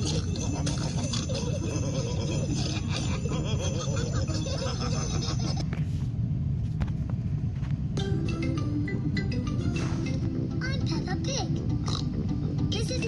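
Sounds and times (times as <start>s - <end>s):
cartoon characters laughing: 0.0s - 5.7s
light background music: 7.8s - 13.0s.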